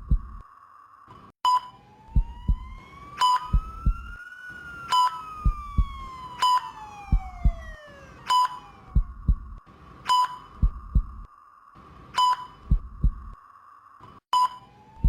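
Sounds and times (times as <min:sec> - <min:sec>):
double heartbeat thump: 0:00.0 - 0:00.4, 0:02.1 - 0:02.8, 0:03.4 - 0:04.2, 0:05.4 - 0:06.2, 0:07.1 - 0:07.8, 0:08.9 - 0:09.6, 0:10.6 - 0:11.3, 0:12.6 - 0:13.4
siren-like rising tone: 0:01.7 - 0:09.6, 0:14.6 - 0:15.0
short high monitor beep: 0:14.4 - 0:14.7.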